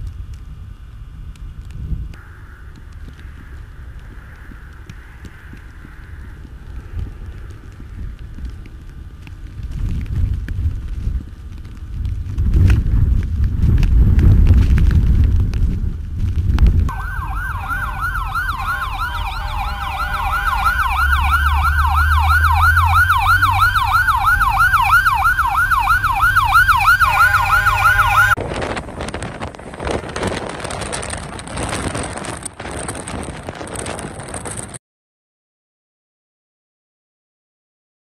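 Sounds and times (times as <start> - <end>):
low rumble: 0.0 - 34.7
emergency siren yelping: 16.9 - 28.4
rushing noise: 16.9 - 31.0.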